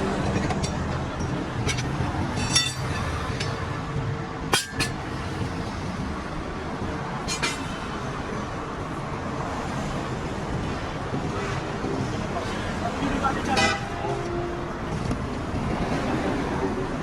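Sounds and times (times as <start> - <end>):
highway traffic rumble: 0.0 - 17.0
metal clinking: 0.4 - 3.7, 7.3 - 7.8.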